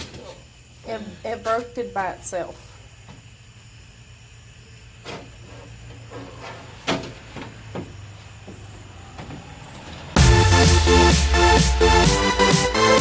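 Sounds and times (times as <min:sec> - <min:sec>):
loud electronic dance music: 0:10.2 - 0:13.0.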